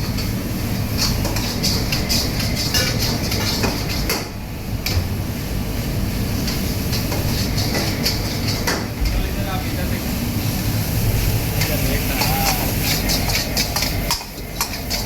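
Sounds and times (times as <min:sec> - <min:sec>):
roaring burner: 0:00.0 - 0:15.0.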